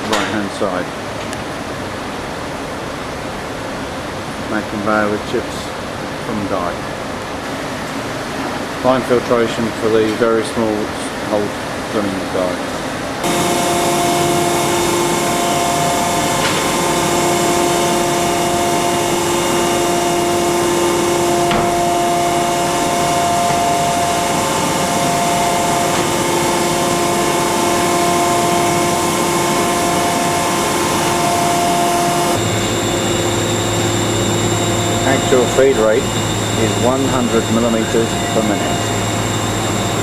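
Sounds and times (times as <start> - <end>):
constant hiss: 0.0 - 40.0
drilling machine whine: 13.0 - 40.0.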